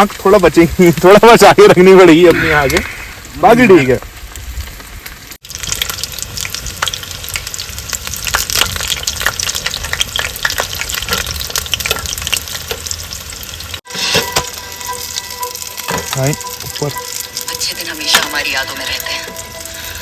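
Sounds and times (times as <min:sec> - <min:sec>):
fish deep-frying in hot oil: 0:00.0 - 0:20.0
low rumble: 0:14.4 - 0:20.0.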